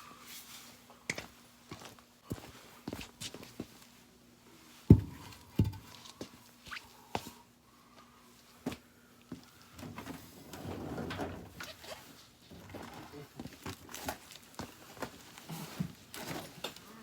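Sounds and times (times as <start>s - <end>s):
washing machine knocking and scraping: 9.8s - 11.7s.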